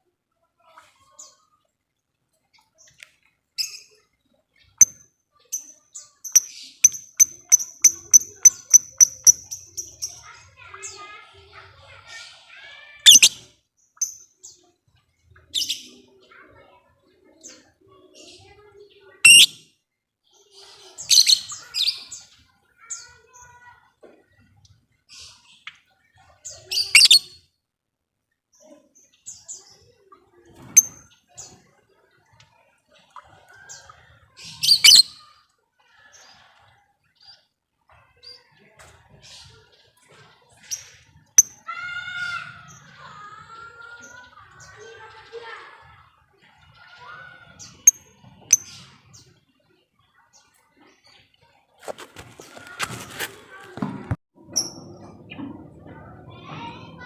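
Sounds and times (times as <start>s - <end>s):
lovebird sharp chirps: 6.3s - 10.2s, 13.1s - 13.4s, 19.3s - 19.6s, 27.0s - 27.3s, 34.7s - 35.1s.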